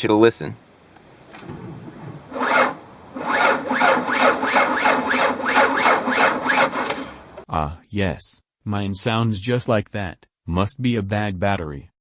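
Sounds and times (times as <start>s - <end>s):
car starter motor cranking: 2.3s - 7.4s.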